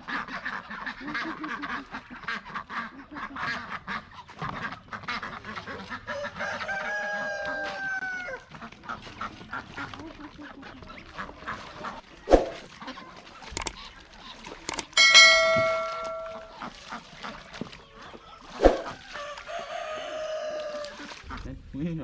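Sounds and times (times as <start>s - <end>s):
poultry clucking and honking: 0.0s - 13.0s, 15.0s - 21.4s
long bird call: 15.0s - 16.6s.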